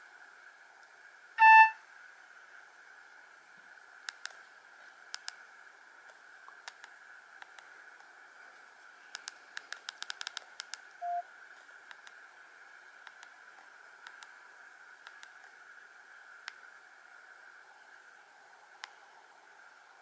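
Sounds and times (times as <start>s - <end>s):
low hiss: 0.0s - 20.0s
phone beep: 1.4s - 1.8s, 11.0s - 11.2s.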